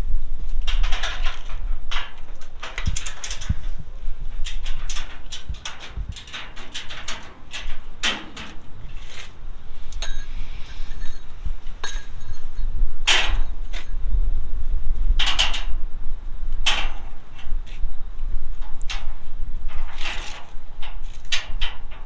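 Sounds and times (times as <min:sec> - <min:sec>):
low rumble: 0:08.7 - 0:21.1.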